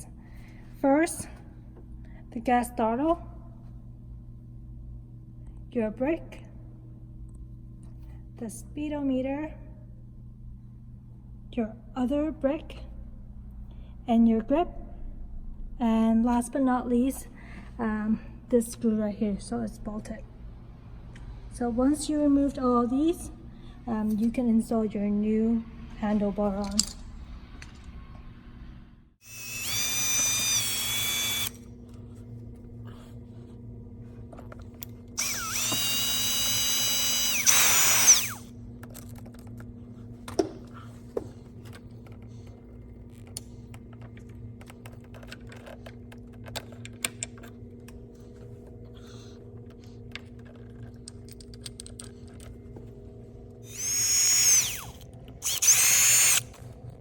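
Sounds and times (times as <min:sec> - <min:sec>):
steady low hum: 0:00.0 - 0:57.0
electric drill whining: 0:29.2 - 0:31.7, 0:35.2 - 0:38.5, 0:53.6 - 0:56.6.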